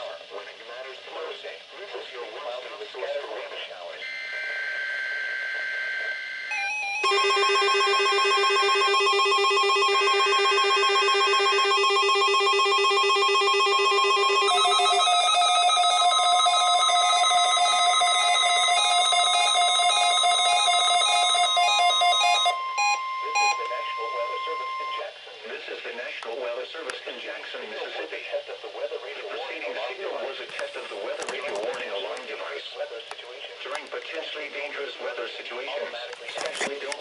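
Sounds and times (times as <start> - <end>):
warning alarm tone: 4.0 - 25.1
weather radio receivers beeping: 18.8 - 25.2.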